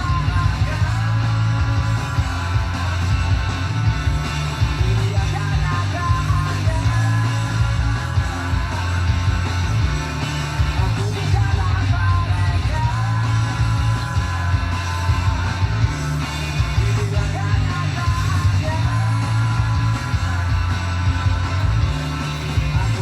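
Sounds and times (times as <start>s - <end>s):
rock song from cassette: 0.0s - 23.0s.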